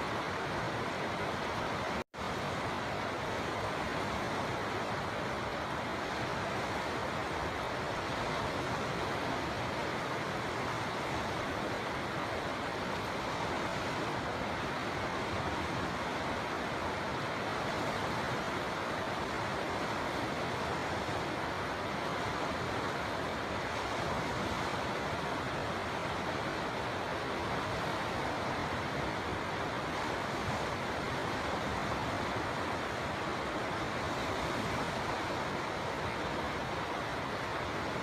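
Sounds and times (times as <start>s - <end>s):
river flowing: 0.0s - 38.0s.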